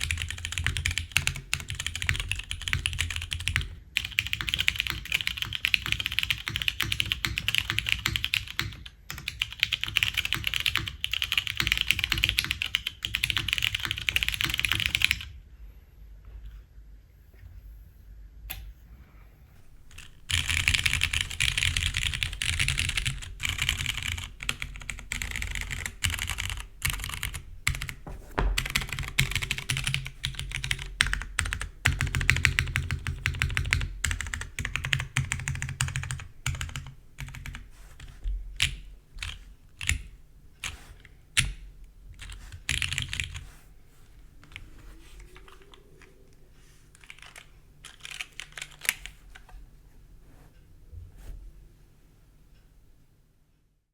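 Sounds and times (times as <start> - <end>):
fast typing on mechanical keyboard: 0.0 - 15.3, 19.8 - 41.6, 42.2 - 43.4, 46.9 - 49.4.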